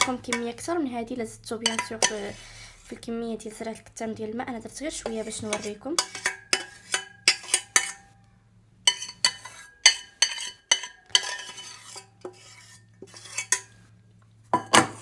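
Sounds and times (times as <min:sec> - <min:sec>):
spoon scraping: 0:00.0 - 0:00.6, 0:01.6 - 0:03.0, 0:05.0 - 0:08.1, 0:08.9 - 0:13.8
spoon clinking on pot: 0:01.6 - 0:02.3, 0:05.1 - 0:08.1, 0:08.9 - 0:13.7.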